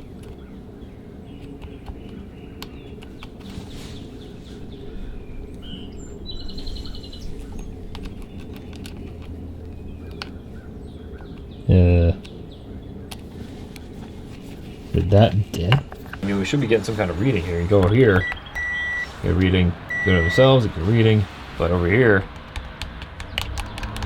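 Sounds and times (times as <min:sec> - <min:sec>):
low background rumble: 0:00.0 - 0:24.0
small birds chirping: 0:00.0 - 0:24.0
light clicks: 0:06.5 - 0:11.6.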